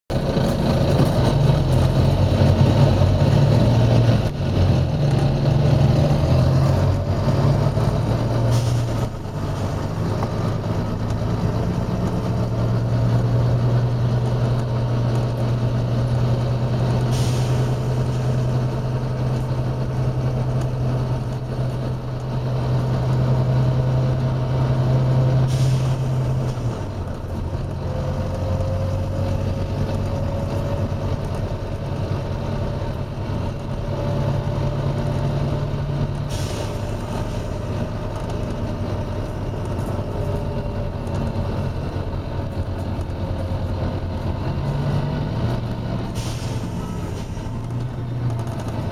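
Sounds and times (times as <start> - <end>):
bus diesel engine droning: 0.1 - 48.9
short air hisses: 8.4 - 9.2, 17.1 - 18.4, 25.5 - 26.5, 36.3 - 37.6, 46.1 - 47.6.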